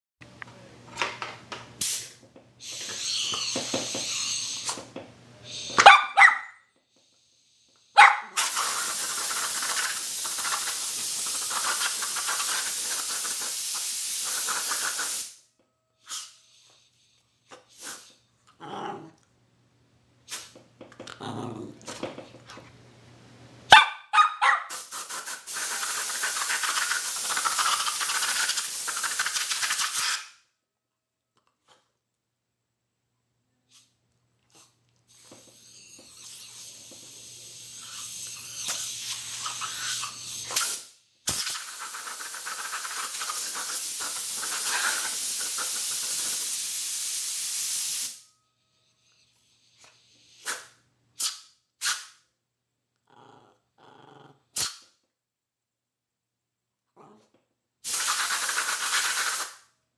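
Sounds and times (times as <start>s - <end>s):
air blow gun hissing: 1.8s - 5.8s, 8.4s - 15.4s, 24.7s - 30.2s, 35.2s - 48.2s, 57.8s - 59.6s.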